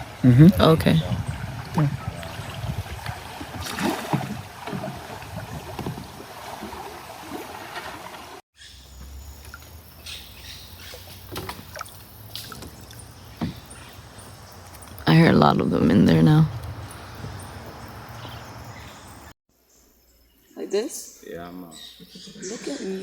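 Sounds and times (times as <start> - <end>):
water lapping and splashing: 0.0 - 8.4, 9.4 - 19.3.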